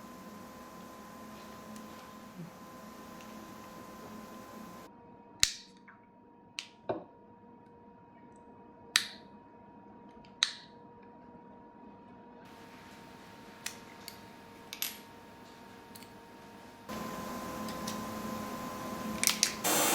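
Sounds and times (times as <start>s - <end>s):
faint steady hum: 0.0s - 4.9s, 12.5s - 19.9s.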